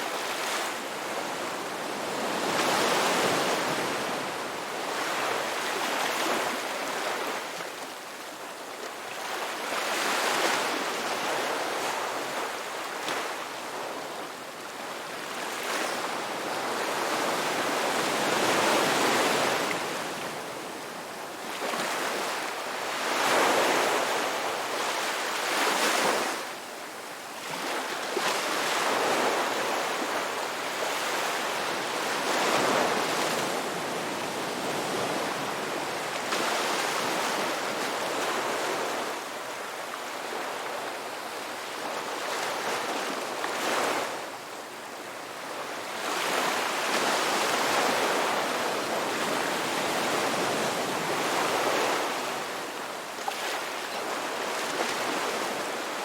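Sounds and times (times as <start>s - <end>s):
waves breaking on shore: 21.4s - 26.6s, 27.4s - 56.0s.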